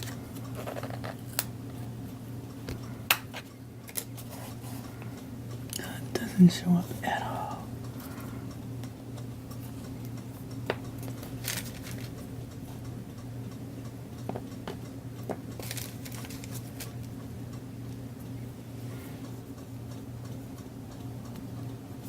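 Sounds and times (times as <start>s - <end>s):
steady low hum: 0.0s - 22.0s
cellophane and paper crinkling: 11.3s - 12.1s, 15.6s - 17.0s.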